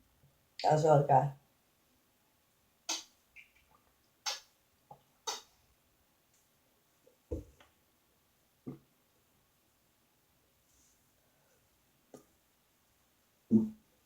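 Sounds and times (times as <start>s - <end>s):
wet mouth clicks and lip smacks: 2.9s - 4.5s, 5.3s - 5.5s
soft thump: 7.3s - 7.6s.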